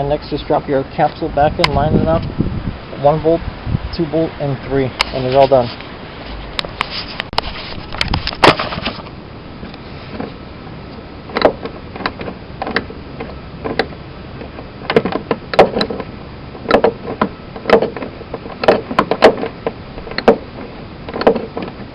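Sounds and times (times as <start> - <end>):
clunks and clicks of handling: 6.5 - 21.9.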